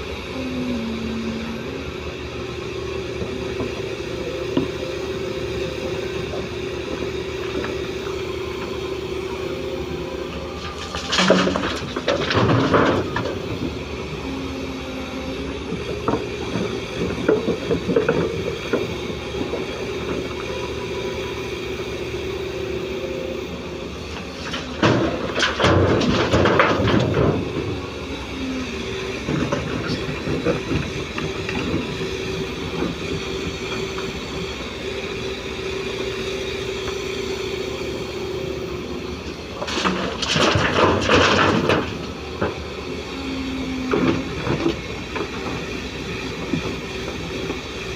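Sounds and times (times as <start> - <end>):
excavator diesel engine running: 0.0 - 47.9
hydraulic whine: 0.0 - 47.9.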